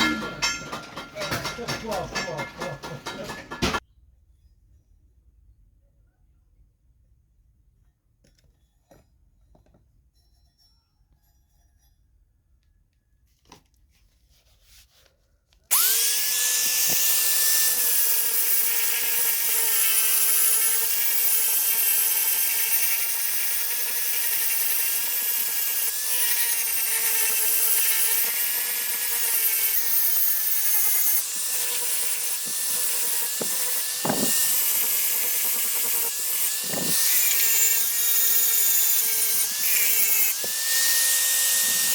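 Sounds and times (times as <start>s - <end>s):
electric power tool whining: 15.7s - 41.9s.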